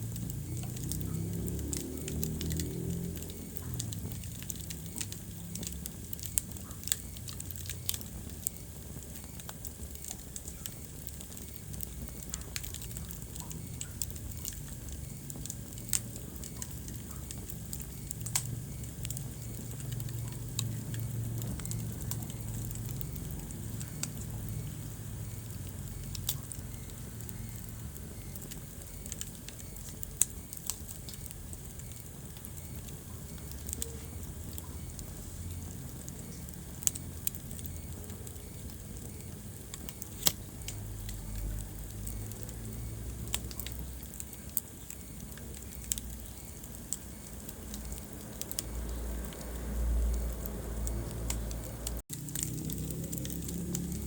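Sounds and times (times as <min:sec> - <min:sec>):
fire crackling and popping: 0:00.0 - 0:54.0
low rumble of flames: 0:00.0 - 0:54.0
wood fire snaps: 0:00.0 - 0:54.0.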